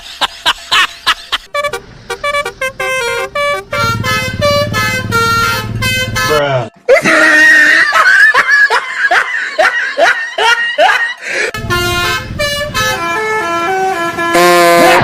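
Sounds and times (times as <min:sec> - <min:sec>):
musical bus horn tune: 0:01.4 - 0:06.7, 0:11.5 - 0:15.0.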